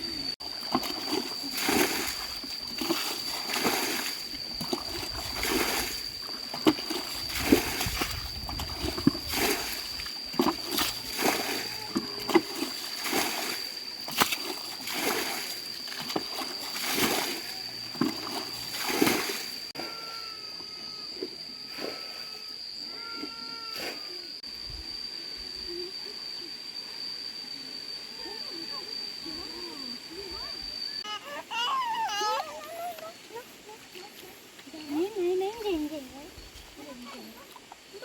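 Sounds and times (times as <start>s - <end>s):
high-pitched whine: 0.0s - 31.0s
water splashing and sloshing: 0.4s - 20.0s.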